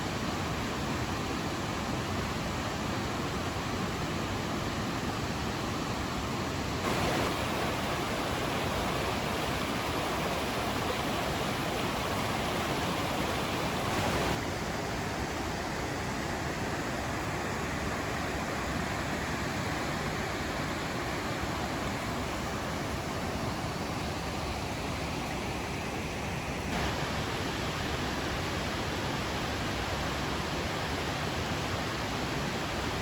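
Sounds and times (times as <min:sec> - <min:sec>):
waterfall rushing into pool: 0:06.8 - 0:33.0.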